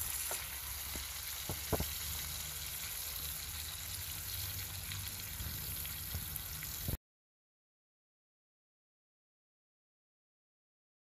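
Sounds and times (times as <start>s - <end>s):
steak sizzling in a frying pan: 0.0s - 7.0s.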